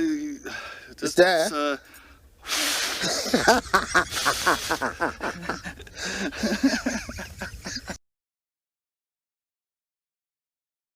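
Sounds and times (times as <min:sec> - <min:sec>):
men laughing: 0:02.6 - 0:08.0.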